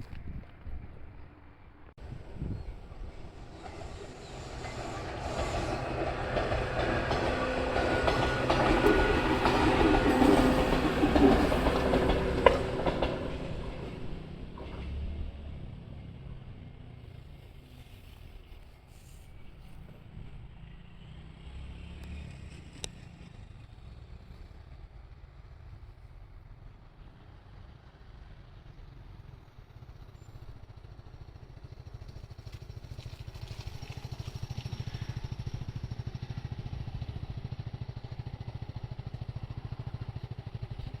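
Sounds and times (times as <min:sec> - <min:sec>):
passing vehicle rumbling: 0:02.0 - 0:18.6, 0:19.7 - 0:25.5.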